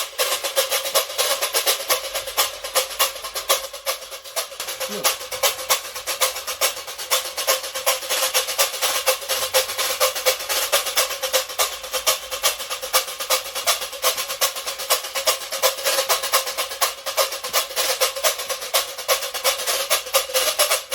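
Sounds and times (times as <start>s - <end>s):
scraper rhythmic scraping: 0.0s - 20.9s.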